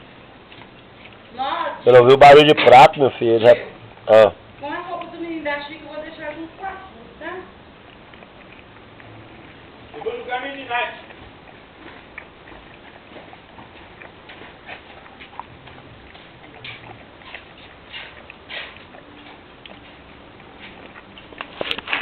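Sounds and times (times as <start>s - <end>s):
dog chewing and smacking: 7.7s - 22.0s.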